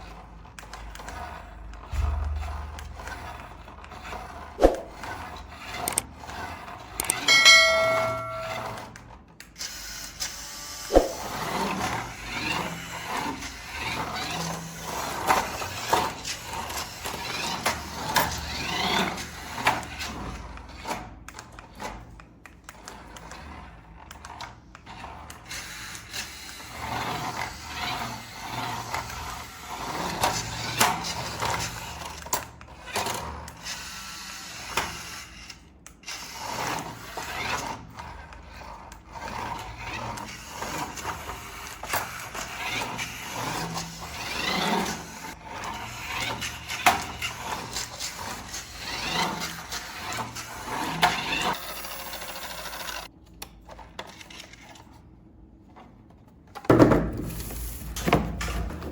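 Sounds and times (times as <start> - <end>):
plastic toy parts clicking: 7.0 - 7.3.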